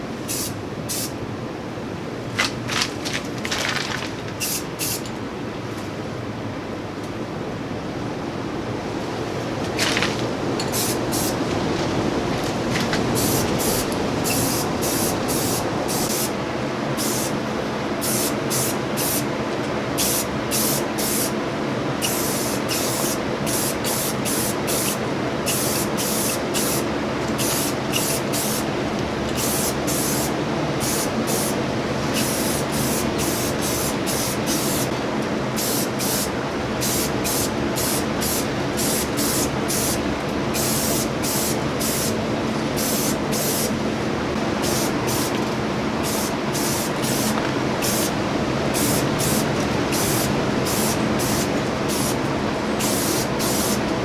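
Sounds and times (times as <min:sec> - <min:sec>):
spray paint hissing: 0:00.3 - 0:01.1, 0:04.4 - 0:05.1, 0:10.7 - 0:11.4, 0:13.1 - 0:16.3, 0:17.0 - 0:17.4, 0:18.0 - 0:19.3, 0:20.0 - 0:21.3, 0:22.0 - 0:28.7, 0:29.3 - 0:34.9, 0:35.6 - 0:42.2, 0:42.8 - 0:43.7, 0:44.6 - 0:45.3, 0:46.0 - 0:52.2, 0:52.8 - 0:53.8.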